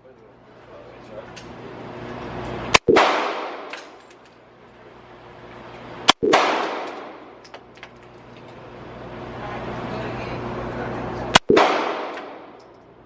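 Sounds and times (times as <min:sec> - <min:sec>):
gunshot with echoing decay: 0:02.8 - 0:03.7, 0:06.2 - 0:07.2, 0:11.4 - 0:12.6.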